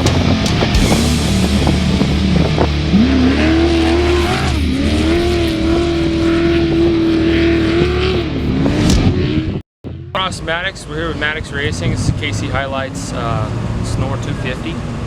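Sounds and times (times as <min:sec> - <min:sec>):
engine revving: 0:00.0 - 0:10.3.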